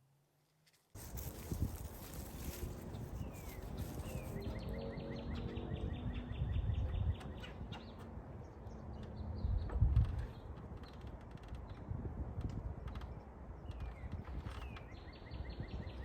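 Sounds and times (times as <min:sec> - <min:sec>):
bird chirping and trilling: 0:01.0 - 0:05.4.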